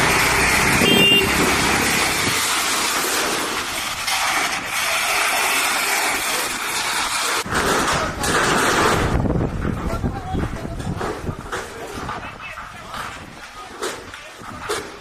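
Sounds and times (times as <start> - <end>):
strong gusty wind: 7.4 - 13.4
wind buffeting on microphone: 7.5 - 13.4.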